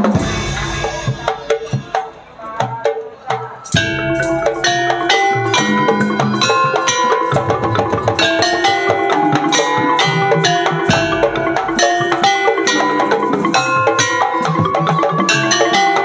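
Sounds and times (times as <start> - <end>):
bamboo slit drums and drums: 0.0 - 16.0
ringing pitched percussion strikes: 0.0 - 16.0.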